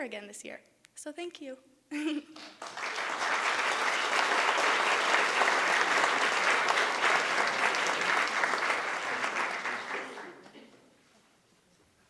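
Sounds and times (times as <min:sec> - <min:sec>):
audience applause: 0:02.4 - 0:10.5.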